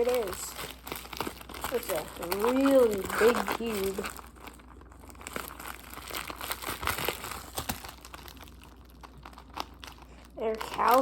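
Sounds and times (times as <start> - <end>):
plastic crinkling: 0.0 - 11.0.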